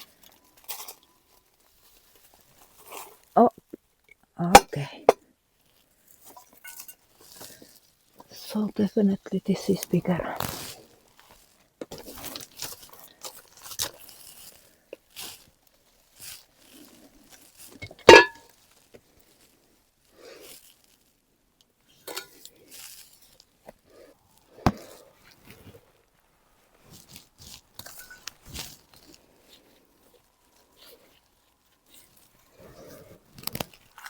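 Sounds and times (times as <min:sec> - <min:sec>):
potting soil rustling and scraping: 0:00.0 - 0:03.4, 0:05.6 - 0:21.2, 0:21.9 - 0:34.0
plant pot knocking: 0:18.1 - 0:18.4.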